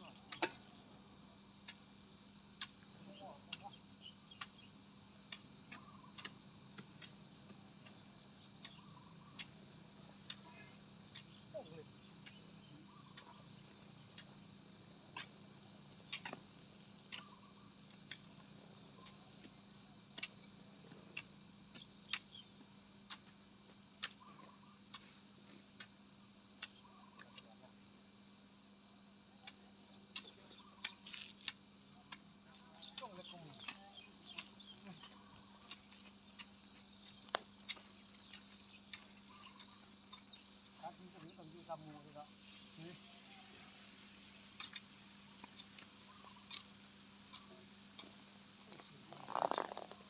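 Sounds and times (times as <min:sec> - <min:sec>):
faint steady hum: 0:00.0 - 0:50.0
sharp clicks: 0:05.3 - 0:08.0, 0:15.2 - 0:16.4, 0:24.0 - 0:25.2, 0:25.8 - 0:27.5, 0:29.4 - 0:40.6.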